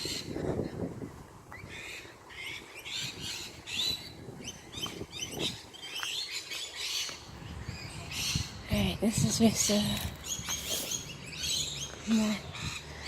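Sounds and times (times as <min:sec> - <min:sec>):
songbirds chirping: 0:00.0 - 0:13.0.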